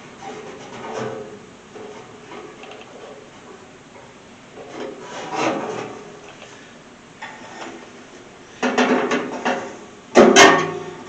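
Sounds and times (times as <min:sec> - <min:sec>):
scraping on metal mechanism: 0:04.6 - 0:06.1, 0:07.2 - 0:07.9.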